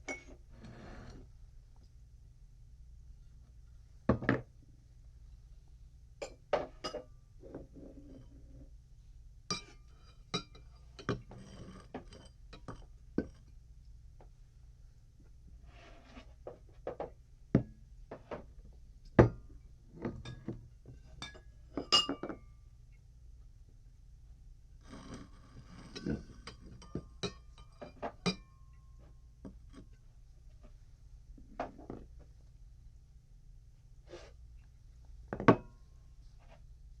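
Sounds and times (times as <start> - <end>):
glassware clinking: 6.2 - 7.1, 21.2 - 22.4, 25.9 - 28.6
glassware rattling: 21.2 - 22.4.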